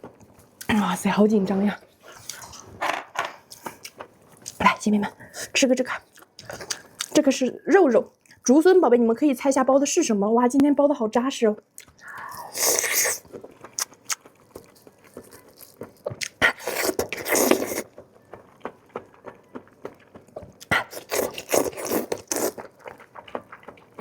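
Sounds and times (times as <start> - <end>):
noisy chewing: 1.6 - 7.4, 11.6 - 24.0.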